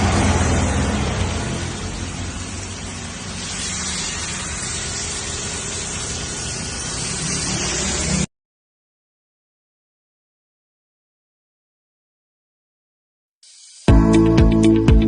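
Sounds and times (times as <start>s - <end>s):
low motor hum: 0.0s - 8.3s
pressure washer spraying: 0.0s - 8.3s, 13.4s - 13.9s.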